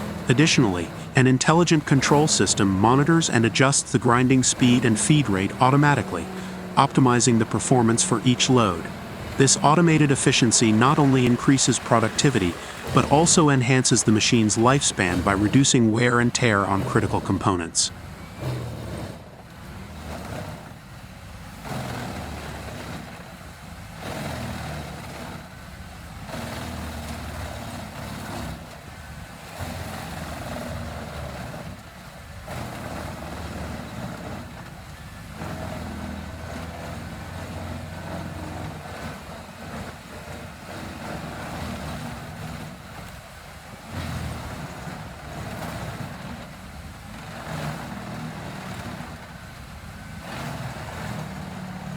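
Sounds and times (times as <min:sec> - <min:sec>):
wood grinder engine running: 0:00.0 - 0:19.3
grinding noise: 0:00.0 - 0:19.4.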